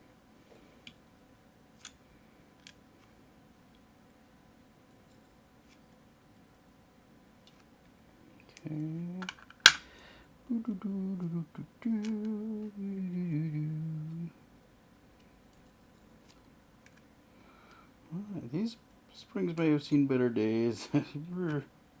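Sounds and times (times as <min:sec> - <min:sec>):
man humming: 0:08.7 - 0:09.3, 0:10.5 - 0:14.4.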